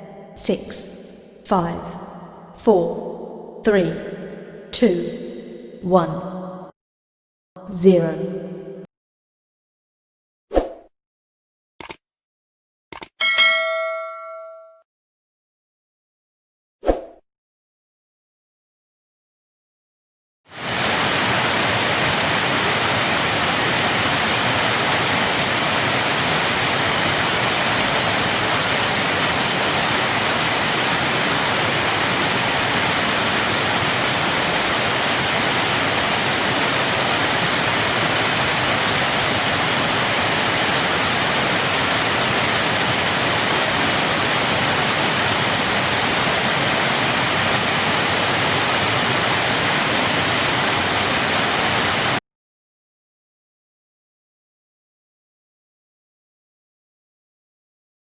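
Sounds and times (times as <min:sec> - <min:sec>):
waterfall rushing: 0:20.5 - 0:52.2.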